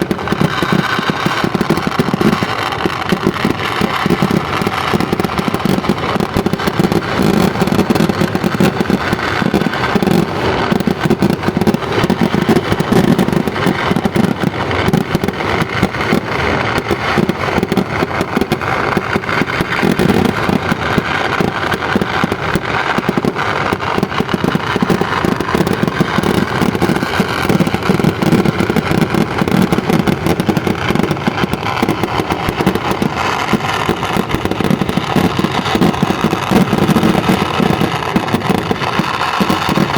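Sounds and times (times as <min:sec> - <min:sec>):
fireworks crackling: 0:00.0 - 0:39.9.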